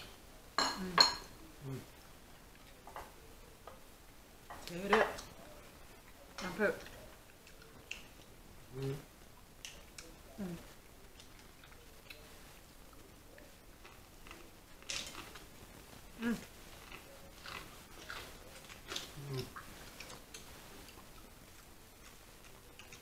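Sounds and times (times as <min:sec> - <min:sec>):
short low vocal sounds: 0:00.8 - 0:01.9, 0:08.7 - 0:09.1, 0:19.2 - 0:19.6
chewing and smacking: 0:04.6 - 0:08.4, 0:09.3 - 0:23.0.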